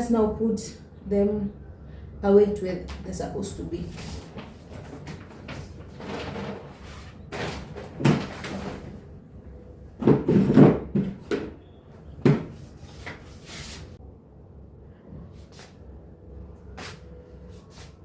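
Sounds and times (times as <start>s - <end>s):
packages rustling: 3.9s - 9.1s
cupboard doors opening and shutting: 4.2s - 9.0s, 10.0s - 11.6s.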